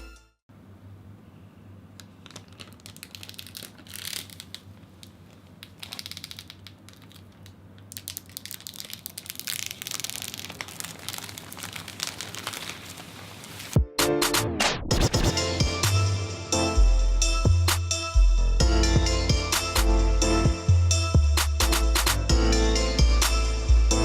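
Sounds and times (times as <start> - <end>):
plastic packaging crinkling: 2.0 - 13.8.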